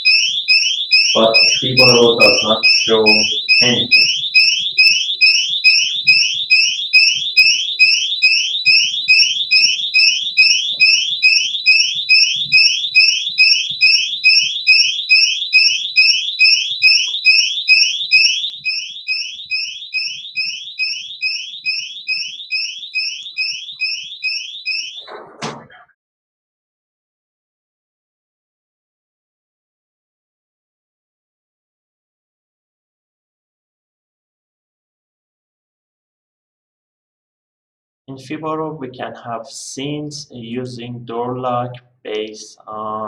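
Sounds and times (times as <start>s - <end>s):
electronic alarm siren chirps: 0.0s - 25.1s.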